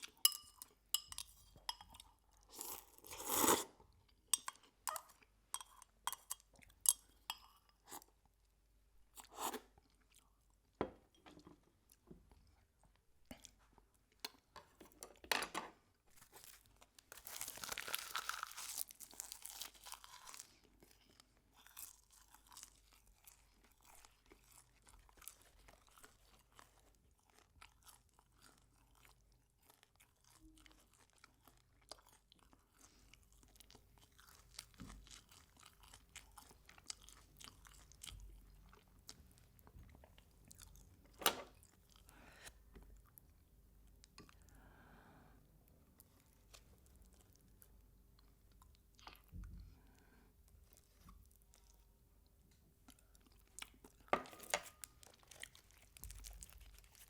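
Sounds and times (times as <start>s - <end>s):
food crunching and chewing: 16.1s - 44.7s, 45.8s - 57.0s.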